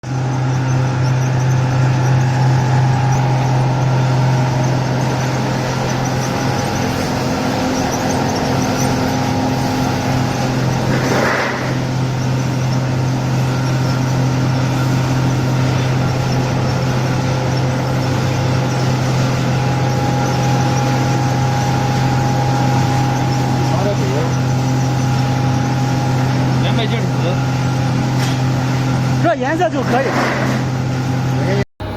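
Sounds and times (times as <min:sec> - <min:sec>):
machine humming and grinding: 0:00.0 - 0:31.9.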